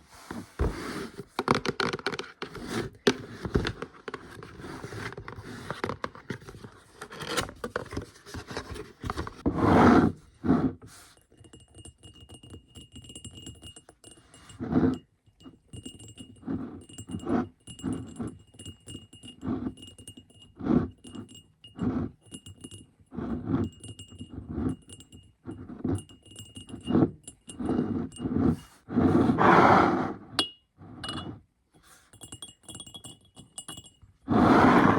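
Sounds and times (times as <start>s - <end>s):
hands handling items: 0.0s - 9.4s
faint high tinkling: 11.0s - 27.9s, 30.4s - 34.2s.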